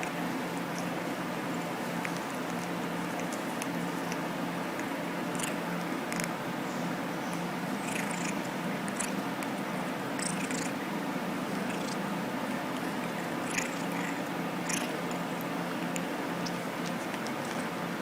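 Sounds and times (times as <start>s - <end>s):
soft clicks and rustles: 0.0s - 6.4s.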